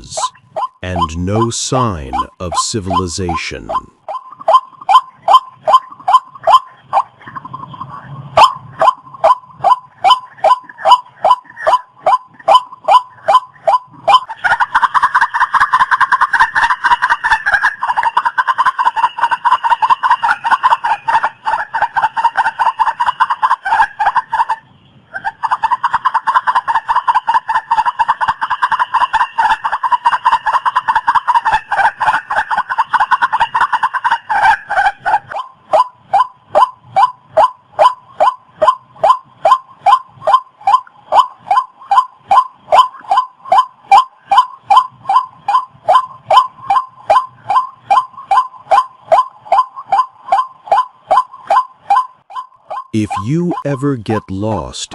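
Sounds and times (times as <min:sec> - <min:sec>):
waterhen calling: 0:00.0 - 0:07.4, 0:25.2 - 0:54.8.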